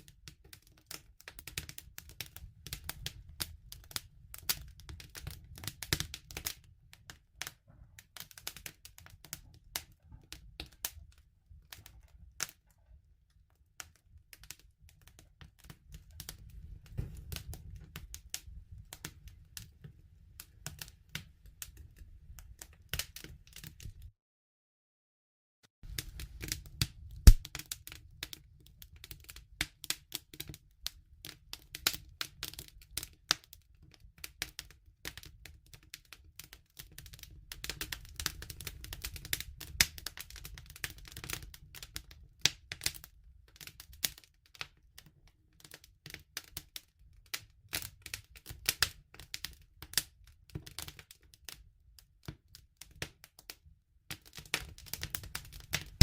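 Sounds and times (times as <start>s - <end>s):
low rumble of burning fire: 0.0s - 24.1s, 25.8s - 51.6s
campfire crackling and popping: 0.1s - 12.6s, 14.3s - 19.7s, 25.8s - 44.2s, 54.2s - 56.0s.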